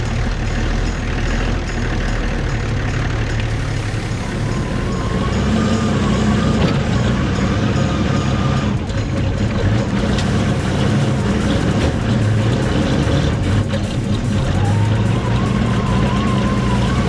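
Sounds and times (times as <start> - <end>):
tractor engine running: 0.0 - 17.0
thin high whine: 3.5 - 9.0, 9.9 - 17.0.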